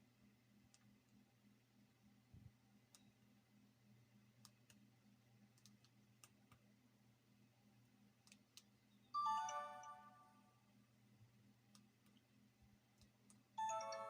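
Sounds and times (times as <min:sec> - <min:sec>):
phone message chime: 0:09.2 - 0:10.3, 0:13.6 - 0:14.0.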